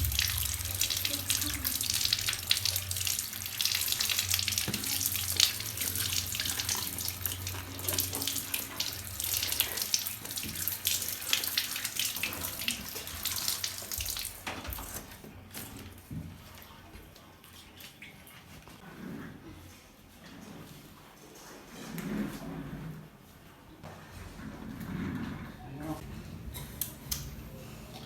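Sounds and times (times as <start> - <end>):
running water splashing: 0.0 - 15.1.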